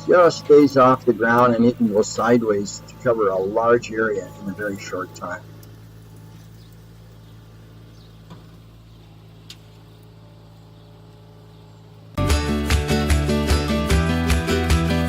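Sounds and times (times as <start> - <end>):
music: 0.0 - 5.6, 12.2 - 15.0
distant engine humming: 0.0 - 15.0.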